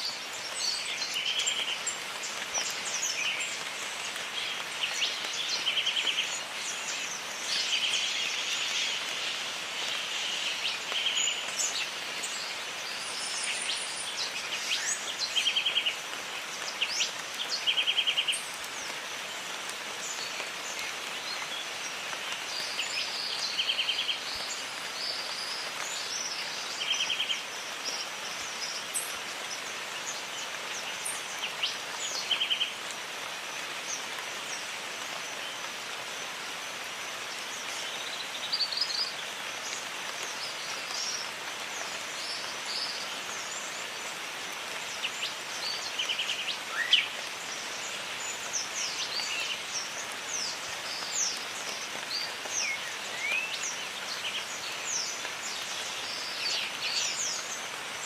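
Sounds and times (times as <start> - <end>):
steady rain: 0.0 - 58.0.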